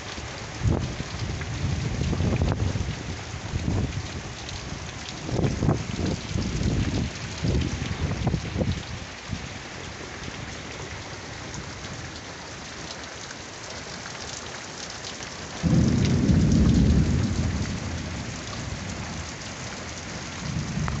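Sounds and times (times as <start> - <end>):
raindrops ticking close by: 0.0 - 21.0
steady rain falling: 0.0 - 21.0
low rumble of thunder: 0.5 - 8.9, 15.6 - 21.0.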